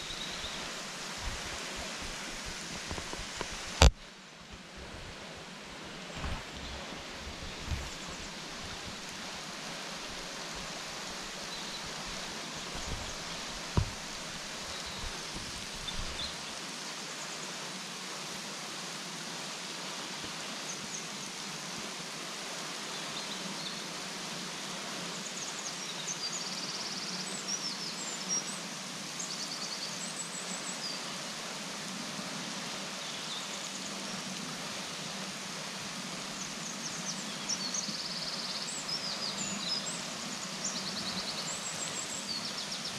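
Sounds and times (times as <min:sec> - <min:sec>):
waterfall rushing: 0:00.0 - 0:26.3
small birds chirping: 0:36.3 - 0:42.9.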